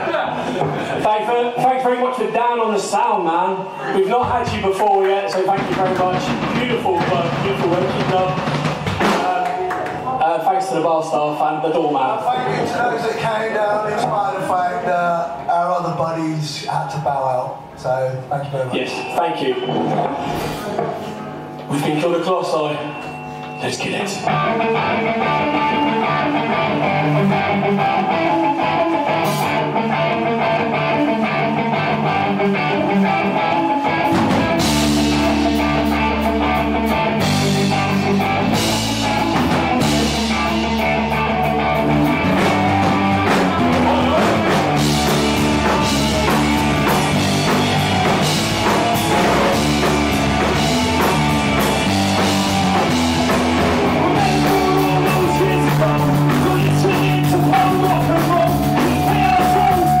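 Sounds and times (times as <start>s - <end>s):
rock band playing: 0.0s - 16.0s, 18.8s - 60.0s
electric guitar: 22.8s - 60.0s.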